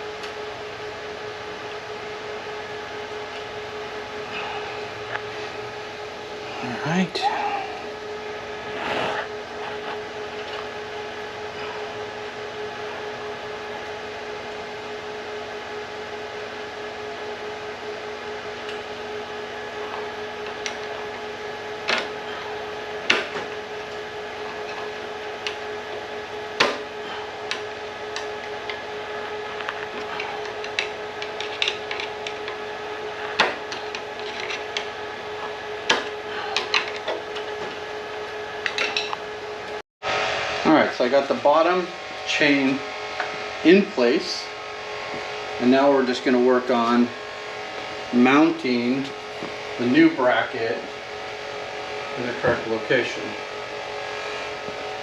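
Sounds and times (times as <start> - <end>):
fan humming: 0.0 - 55.0.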